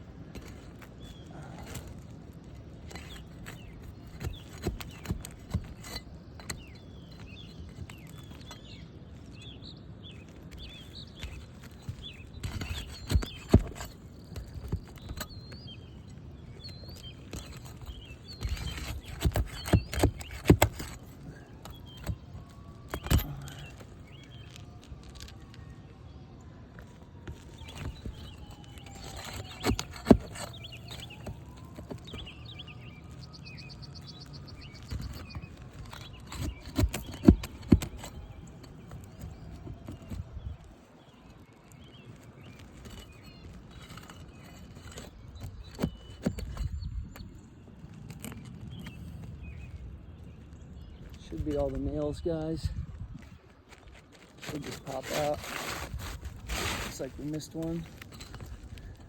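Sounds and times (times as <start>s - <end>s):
small birds chirping: 0.0s - 59.0s
hand tool prying nails from shingle: 0.2s - 8.7s, 10.2s - 25.4s, 27.2s - 40.7s, 41.7s - 47.4s.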